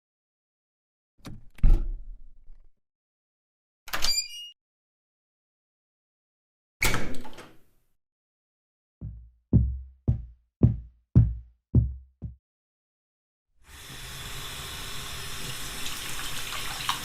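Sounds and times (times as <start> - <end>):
heavy footsteps on wooden floor: 9.0 - 12.4.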